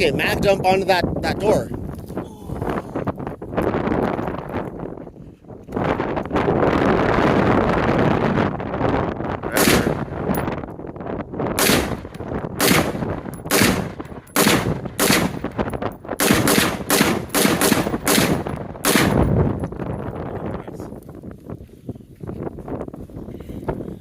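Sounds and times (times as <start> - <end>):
wind on microphone: 0.0 - 24.0
rifle shots: 9.6 - 10.2, 11.6 - 19.4.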